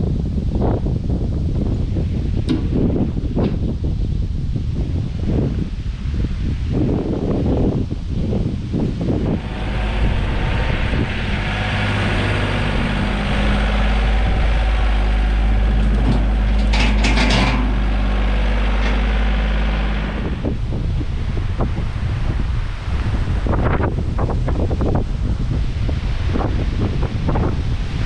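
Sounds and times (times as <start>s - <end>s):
vehicle engine running: 0.0s - 28.0s.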